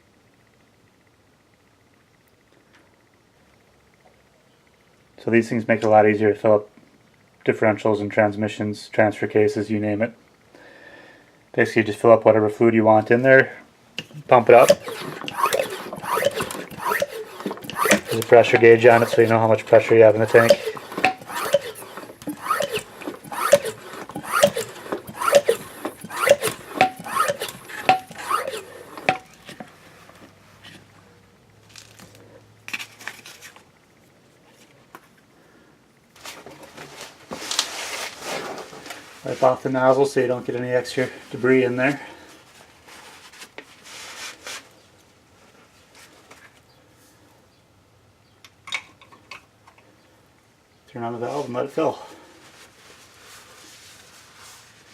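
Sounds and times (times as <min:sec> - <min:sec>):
hand pump strokes: 0:14.0 - 0:29.7
pump squeaking: 0:14.0 - 0:29.7
rubbing and rustling: 0:14.0 - 0:30.9, 0:36.2 - 0:40.1, 0:42.4 - 0:45.0, 0:52.4 - 0:54.9.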